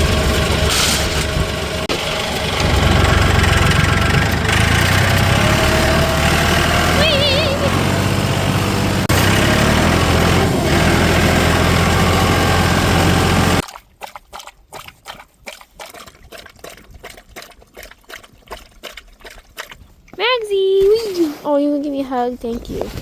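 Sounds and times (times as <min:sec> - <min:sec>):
tractor engine running: 0:00.0 - 0:13.6.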